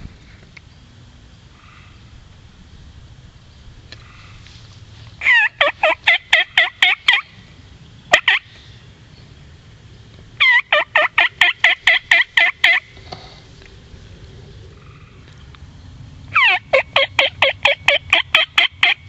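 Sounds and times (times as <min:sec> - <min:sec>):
wild turkey yelping: 0:05.2 - 0:07.3, 0:08.1 - 0:08.5, 0:10.4 - 0:12.9, 0:16.3 - 0:19.0.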